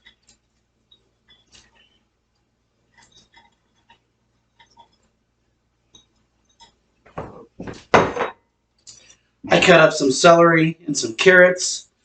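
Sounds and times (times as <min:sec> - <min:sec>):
utensils and dishes clicking: 0:00.0 - 0:02.0, 0:02.9 - 0:05.1.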